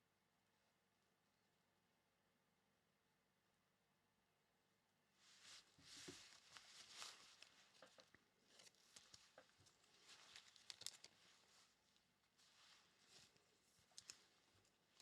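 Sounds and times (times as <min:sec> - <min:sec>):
cards rustling into plastic sleeves: 0:05.8 - 0:11.8, 0:12.4 - 0:15.0.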